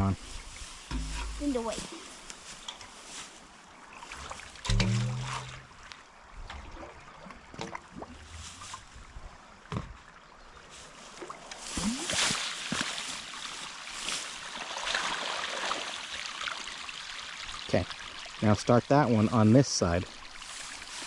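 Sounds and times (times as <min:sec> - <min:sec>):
water splashing and sloshing: 0:00.0 - 0:21.0.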